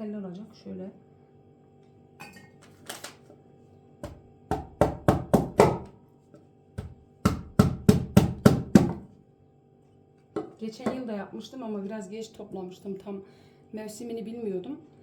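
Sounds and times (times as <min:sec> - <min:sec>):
cleaver chopping pine cones: 0:04.0 - 0:05.9, 0:06.8 - 0:09.0.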